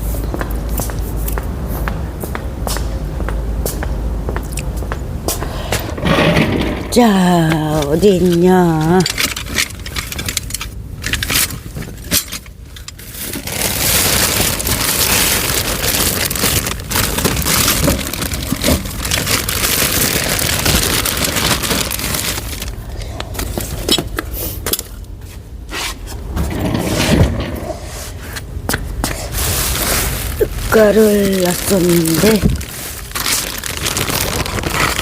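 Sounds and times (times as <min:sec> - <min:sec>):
rustling and rummaging: 0:05.8 - 0:25.0, 0:29.0 - 0:35.0.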